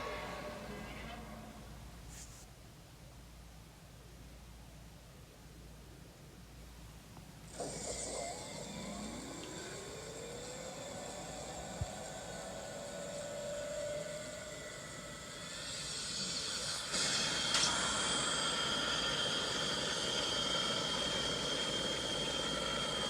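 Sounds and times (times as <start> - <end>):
monster hissing rush with whine: 7.6 - 23.0.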